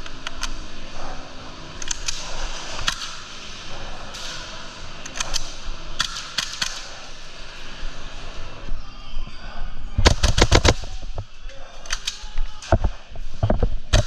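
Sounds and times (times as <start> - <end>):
airsoft gunshots: 10.0 - 11.1.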